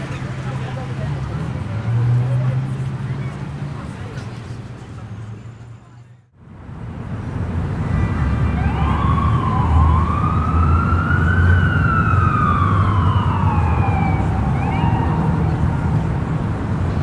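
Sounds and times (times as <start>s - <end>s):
city traffic rumble: 0.0s - 17.0s
emergency siren wailing: 7.8s - 16.7s.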